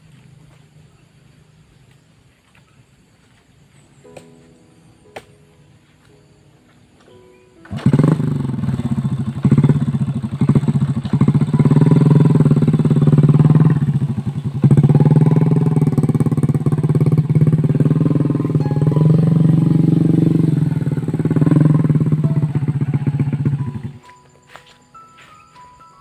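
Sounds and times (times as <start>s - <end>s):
motorcycle engine revving: 7.6s - 24.7s.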